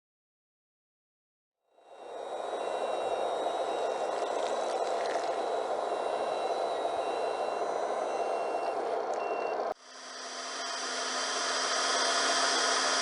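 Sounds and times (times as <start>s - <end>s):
faint high whine: 1.7s - 13.0s
electric blower rushing hiss: 9.8s - 13.0s.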